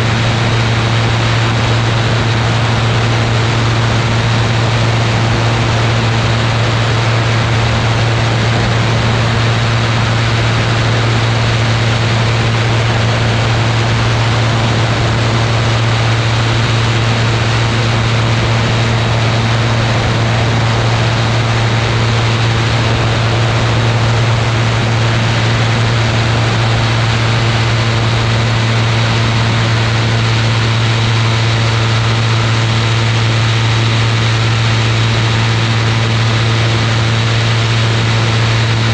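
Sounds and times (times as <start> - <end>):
aircraft engine and propeller: 0.0 - 38.9.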